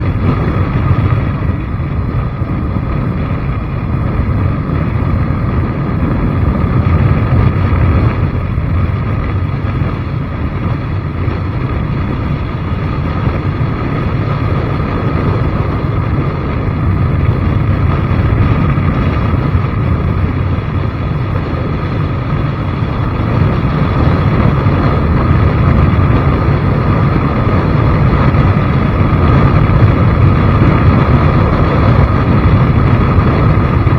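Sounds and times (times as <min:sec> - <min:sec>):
vehicle running: 0:00.0 - 0:33.9
wind buffeting microphone: 0:00.0 - 0:33.9.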